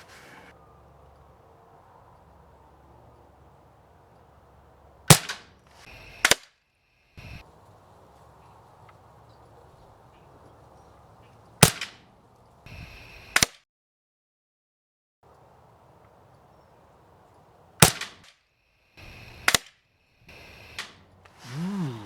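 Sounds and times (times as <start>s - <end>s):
air rifle shots: 5.1s - 5.6s, 6.2s - 6.5s, 11.6s - 12.1s, 13.3s - 13.6s, 17.8s - 18.3s, 19.0s - 19.7s, 20.4s - 21.1s.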